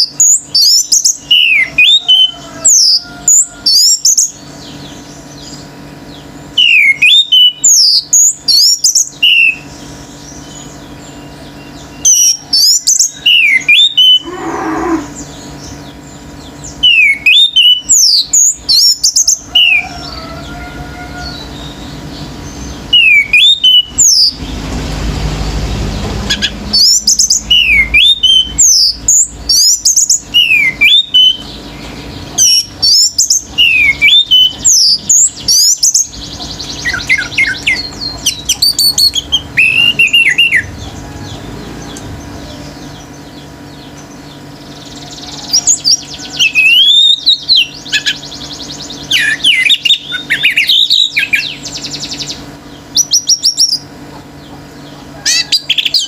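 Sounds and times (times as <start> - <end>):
low bird call: 0.0 - 24.7, 25.9 - 56.0
thrush singing: 16.5 - 53.0.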